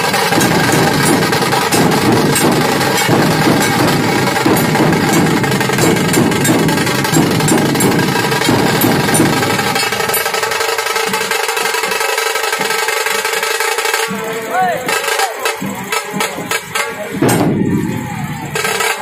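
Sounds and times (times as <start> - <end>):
steady musical tone: 0.0 - 11.3
rapid rattling drumming: 0.0 - 19.0.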